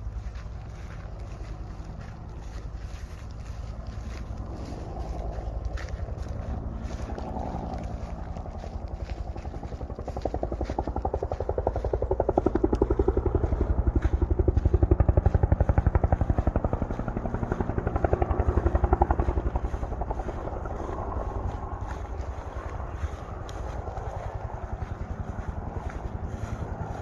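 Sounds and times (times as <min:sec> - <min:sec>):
helicopter rotor thudding: 0:06.6 - 0:21.8.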